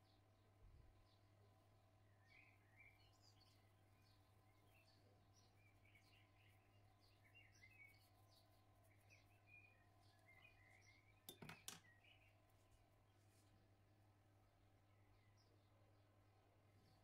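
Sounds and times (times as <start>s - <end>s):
faint bird chirps: 0.0s - 13.6s.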